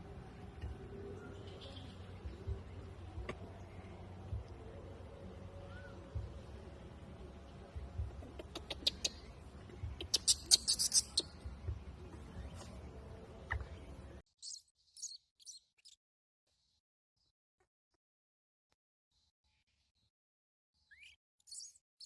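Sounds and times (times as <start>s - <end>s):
baby monkey squealing: 8.3s - 9.2s, 10.0s - 11.4s, 21.5s - 21.8s.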